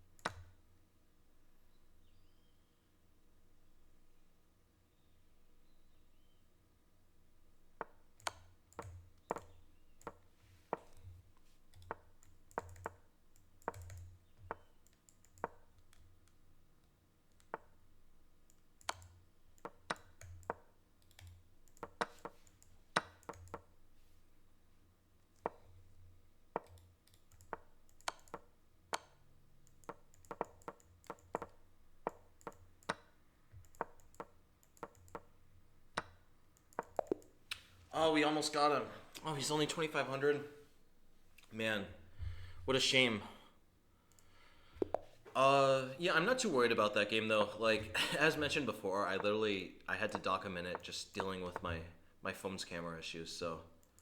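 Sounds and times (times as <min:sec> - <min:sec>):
computer mouse clicks: 0:00.2 - 0:00.6, 0:07.8 - 0:23.8, 0:25.3 - 0:37.7, 0:44.1 - 0:45.2, 0:53.8 - 0:54.0.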